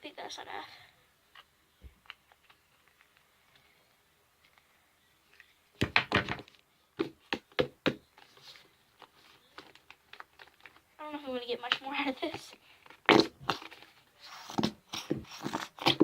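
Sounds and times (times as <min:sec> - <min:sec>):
knocks on a hard surface: 0:07.0 - 0:08.0.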